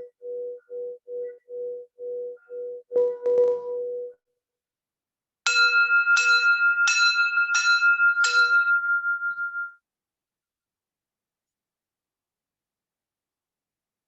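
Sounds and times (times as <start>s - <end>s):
high-pitched bell strikes: 5.5s - 9.8s.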